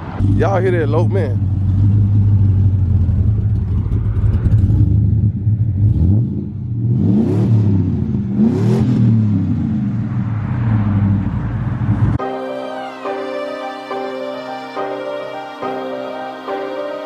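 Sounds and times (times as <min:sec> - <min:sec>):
car engine idling and revving: 0:00.0 - 0:12.2.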